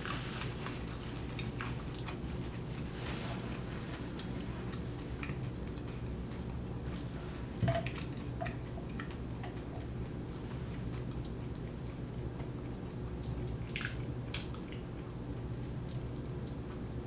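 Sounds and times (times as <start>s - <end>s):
chewing food: 0.0s - 2.9s, 4.1s - 7.0s, 7.7s - 10.2s.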